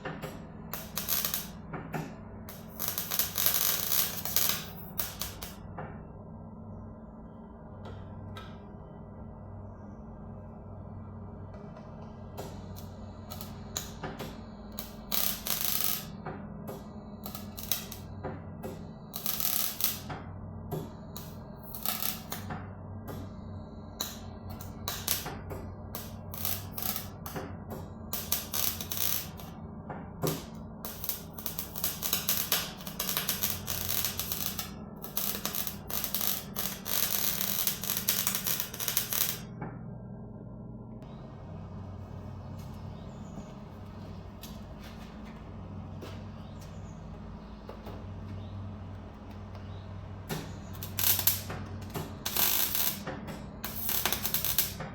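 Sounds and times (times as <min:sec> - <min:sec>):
steady low hum: 0:00.0 - 0:54.9
welder crackling: 0:00.7 - 0:01.6, 0:02.5 - 0:05.6, 0:12.4 - 0:16.2, 0:17.0 - 0:18.2, 0:19.0 - 0:20.1, 0:21.0 - 0:22.5, 0:24.0 - 0:25.3, 0:25.9 - 0:27.4, 0:28.1 - 0:29.6, 0:30.3 - 0:39.5, 0:49.0 - 0:54.9.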